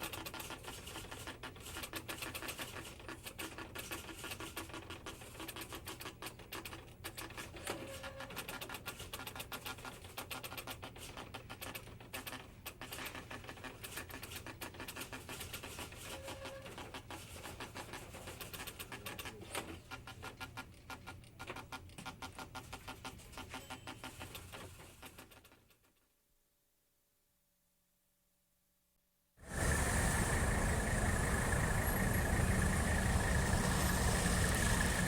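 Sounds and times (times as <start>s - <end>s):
teletype machines clicking: 0.0s - 25.6s
low hum: 29.5s - 35.0s.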